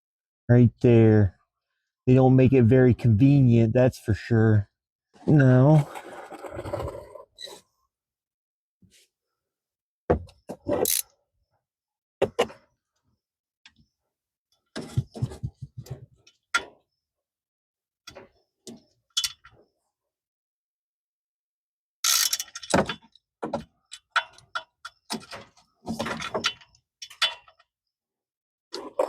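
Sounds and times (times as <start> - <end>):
ratchet wrench clicking: 10.8 - 11.0, 22.0 - 22.6.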